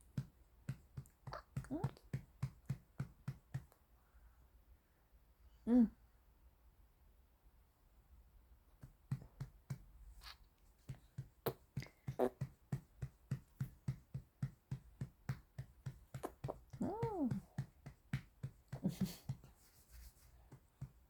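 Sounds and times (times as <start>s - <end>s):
soft rhythmic patting: 0.0s - 3.9s, 8.7s - 21.0s
baby vocal sound: 11.5s - 12.5s.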